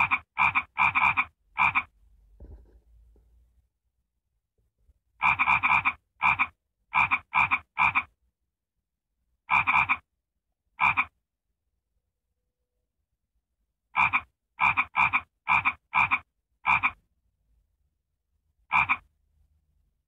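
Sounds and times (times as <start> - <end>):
frog croaking: 0.0 - 2.0, 5.2 - 8.2, 9.5 - 10.1, 10.8 - 11.2, 13.9 - 17.0, 18.6 - 19.1.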